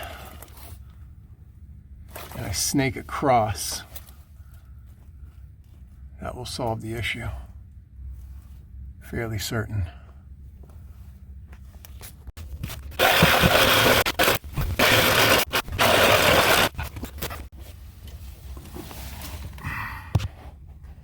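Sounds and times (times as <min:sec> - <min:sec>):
handling noises: 0:10.3 - 0:21.0
loud rough scraping: 0:12.7 - 0:17.5.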